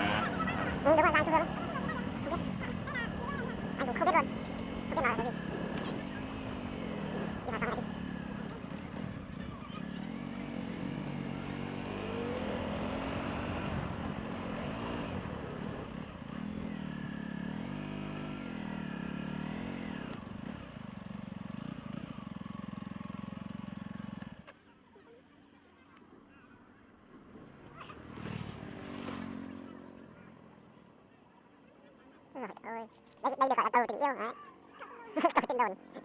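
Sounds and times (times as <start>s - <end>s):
motorbike engine revving: 0.0s - 24.5s
traffic noise: 0.0s - 36.0s.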